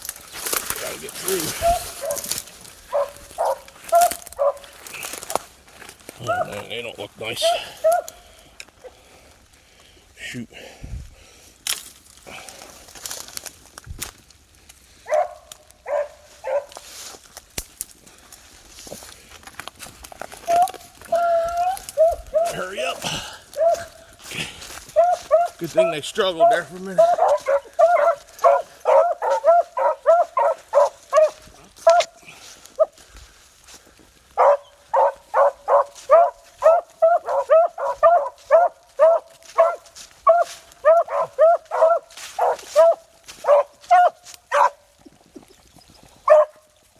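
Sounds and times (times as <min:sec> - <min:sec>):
hounds baying: 0:00.5 - 0:09.0, 0:15.0 - 0:16.9, 0:20.2 - 0:33.1, 0:34.3 - 0:45.0, 0:46.2 - 0:46.8
dogs barking in short yelps: 0:01.6 - 0:02.3, 0:02.9 - 0:04.7, 0:07.4 - 0:08.2, 0:15.1 - 0:16.8, 0:20.4 - 0:23.0, 0:23.6 - 0:24.0, 0:24.9 - 0:32.2, 0:34.4 - 0:44.8, 0:46.2 - 0:46.7.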